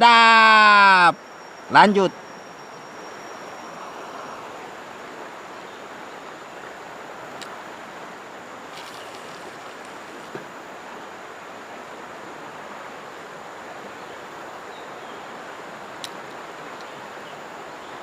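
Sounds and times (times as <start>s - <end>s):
river water flowing: 0.0s - 18.0s
small click: 16.0s - 16.9s.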